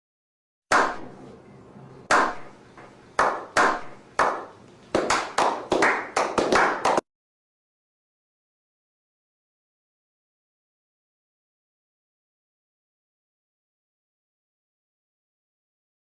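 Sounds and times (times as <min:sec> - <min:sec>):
person clapping slowly: 0:03.2 - 0:07.0.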